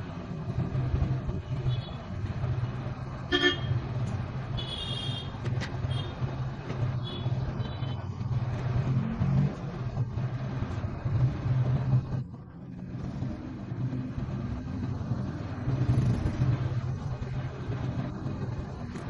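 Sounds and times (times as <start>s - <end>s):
road traffic hum: 0.0s - 19.0s
vehicle horn blasts: 3.3s - 3.7s, 4.6s - 5.3s.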